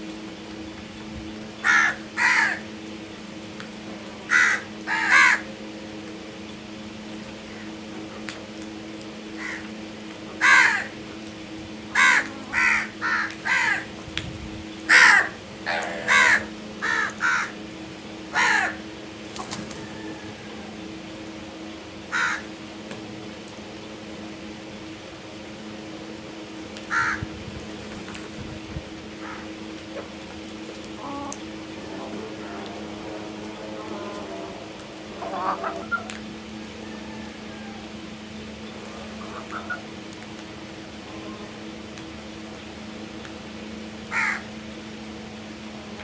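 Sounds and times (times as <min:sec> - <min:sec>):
steady low hum: 0:00.0 - 0:46.0
crows cawing: 0:01.6 - 0:02.7, 0:04.2 - 0:05.5, 0:09.4 - 0:09.8, 0:10.4 - 0:11.0, 0:11.9 - 0:13.9, 0:14.9 - 0:17.6, 0:18.3 - 0:18.9, 0:22.1 - 0:22.5, 0:26.9 - 0:27.3, 0:29.2 - 0:29.5, 0:44.1 - 0:44.5.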